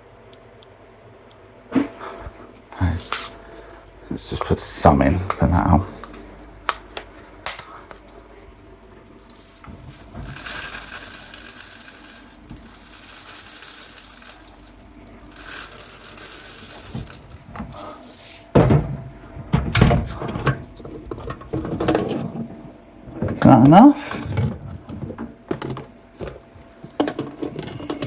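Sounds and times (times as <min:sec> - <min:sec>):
coarse salt pouring: 0:09.2 - 0:18.5.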